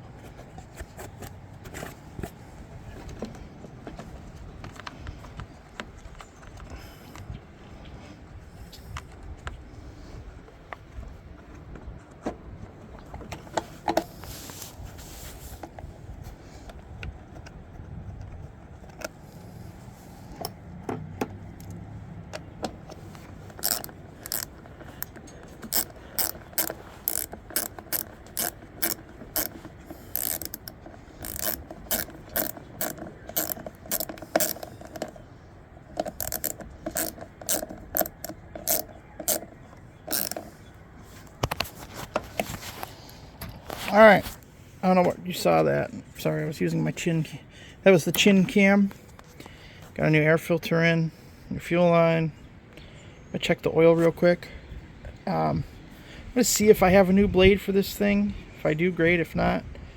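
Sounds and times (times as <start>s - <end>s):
ratchet wrench clicking: 23.2s - 35.2s, 36.0s - 39.5s, 40.1s - 40.5s.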